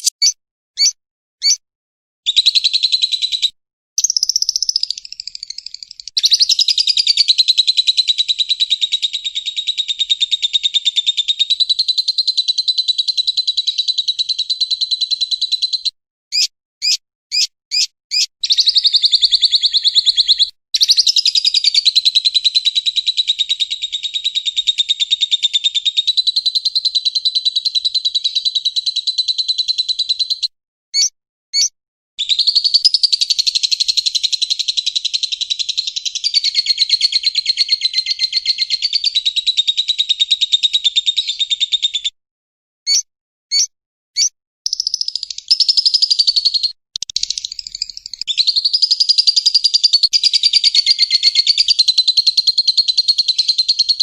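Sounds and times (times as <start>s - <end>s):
bird chirps: 0.0s - 1.6s, 2.3s - 42.2s, 42.9s - 54.0s
lovebird chattering trills: 0.0s - 1.6s, 4.0s - 7.2s, 47.0s - 51.7s.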